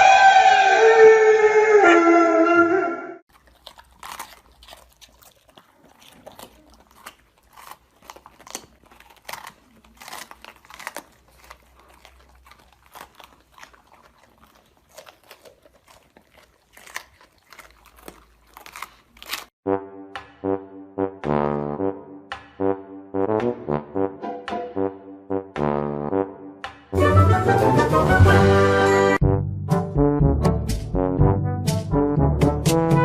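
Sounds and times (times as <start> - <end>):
crisp crunching: 3.3 - 19.6.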